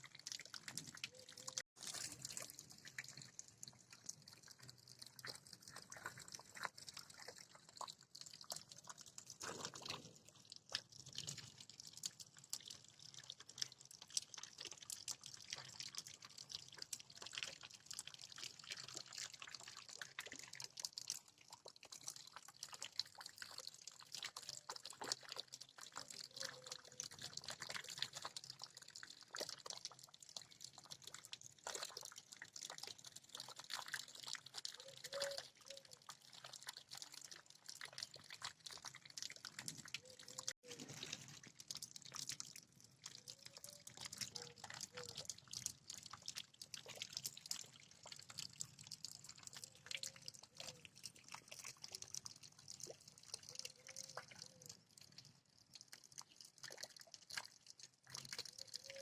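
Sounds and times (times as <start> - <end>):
drops dripping and splashing: 0.0 - 59.0.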